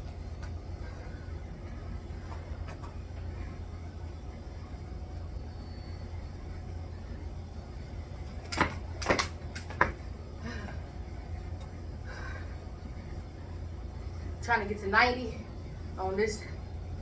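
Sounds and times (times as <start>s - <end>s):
jump rope slapping ground: 8.3s - 10.1s.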